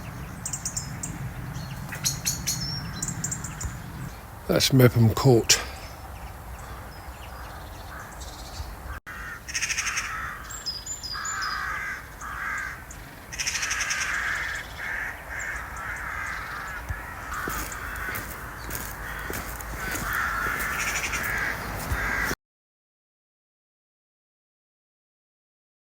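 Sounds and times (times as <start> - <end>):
crows cawing: 5.6 - 22.4.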